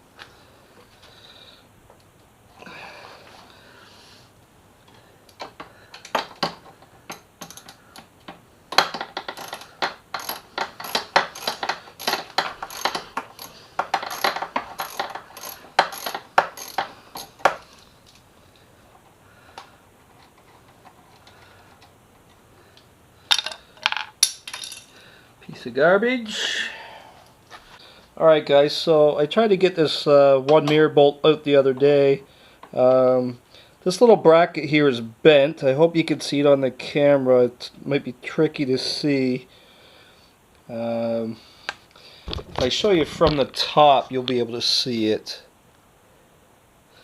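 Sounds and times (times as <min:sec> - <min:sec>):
ratchet wrench clicking: 0:07.1 - 0:07.8, 0:08.8 - 0:17.6.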